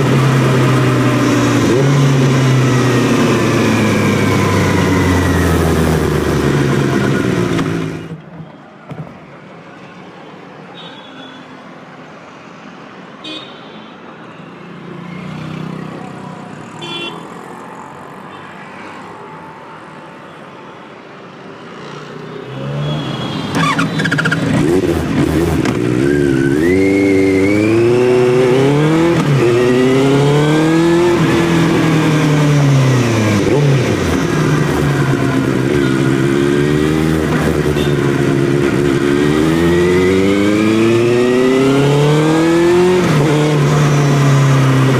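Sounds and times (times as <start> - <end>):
motorcycle engine accelerating: 0.0 - 8.1, 23.6 - 44.9.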